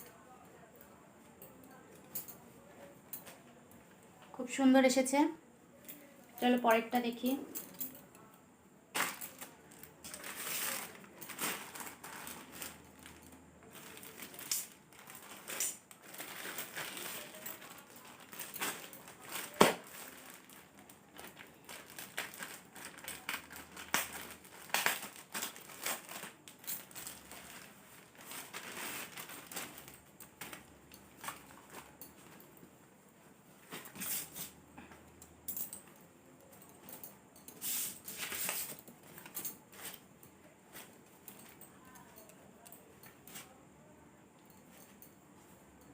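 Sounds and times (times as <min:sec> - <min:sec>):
plastic packaging crinkling: 0:08.9 - 0:32.4.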